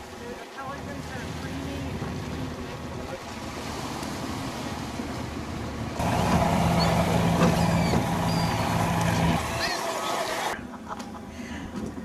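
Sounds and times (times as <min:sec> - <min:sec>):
boat motor running: 0:00.6 - 0:10.6
high bird chirps: 0:07.6 - 0:08.8.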